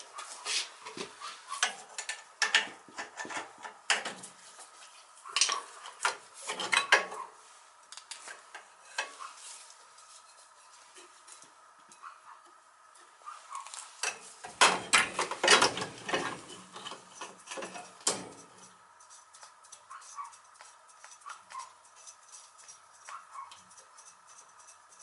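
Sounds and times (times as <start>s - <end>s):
faint steady hum: 0.0s - 25.0s
metal tools clinking and scraping: 1.5s - 7.2s, 13.5s - 25.0s.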